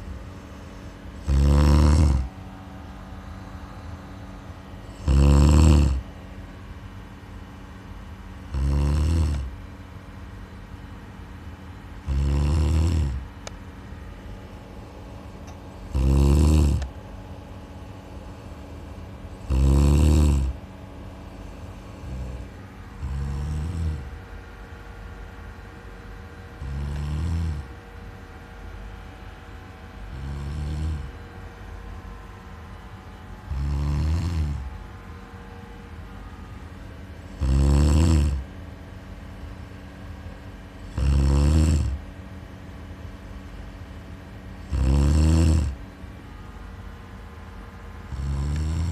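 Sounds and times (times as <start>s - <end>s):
faint steady hum: 0.0s - 48.9s
person snoring: 0.7s - 2.3s, 4.9s - 6.0s, 8.5s - 9.5s, 12.0s - 13.2s, 15.9s - 16.9s, 19.4s - 20.6s, 21.6s - 24.2s, 26.6s - 27.7s, 30.1s - 31.2s, 33.5s - 34.7s, 37.3s - 38.4s, 40.8s - 42.0s, 44.6s - 45.8s, 48.1s - 48.9s.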